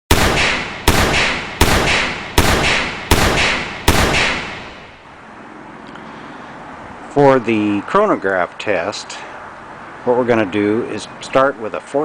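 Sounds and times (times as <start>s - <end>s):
gunshots: 0.1s - 5.0s.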